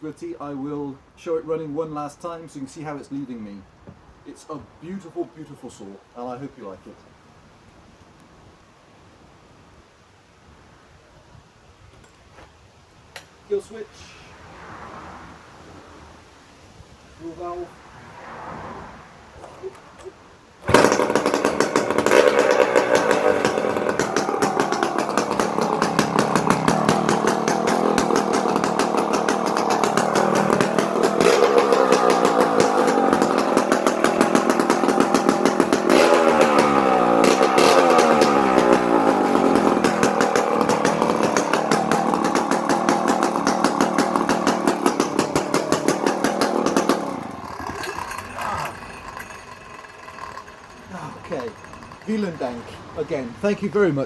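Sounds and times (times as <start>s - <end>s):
chainsaw starting and revving: 20.6s - 53.7s.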